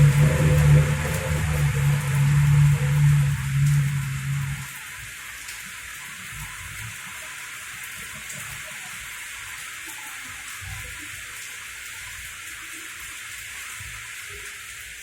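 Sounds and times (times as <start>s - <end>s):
low rumble: 0.0s - 4.8s
heavy rain pouring: 0.0s - 15.0s.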